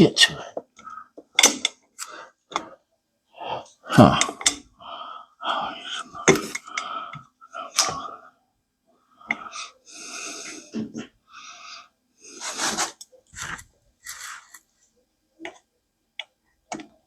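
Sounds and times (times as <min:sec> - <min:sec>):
man's strained breaths: 0:03.4 - 0:08.4.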